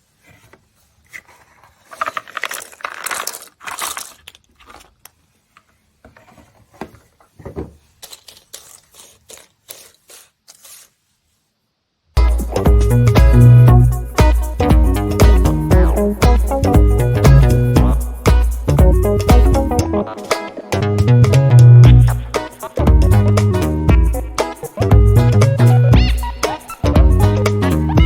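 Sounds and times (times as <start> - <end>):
puzzle pieces rustling and scraping: 0.2 - 11.1
puzzle pieces clicking and tapping: 1.9 - 4.9
electronic music with steady beat: 12.2 - 28.0.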